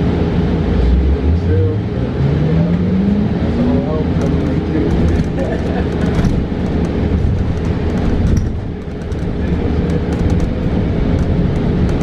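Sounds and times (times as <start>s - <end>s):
electric bus whine: 0.0s - 12.0s
low road rumble: 0.0s - 12.0s
light rattles and clicks: 4.1s - 12.0s.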